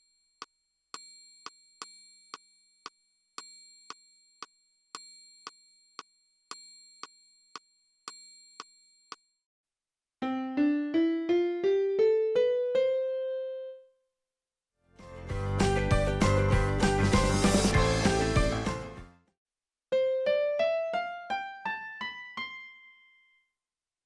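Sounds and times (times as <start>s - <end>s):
rising piano scale: 10.2s - 13.8s.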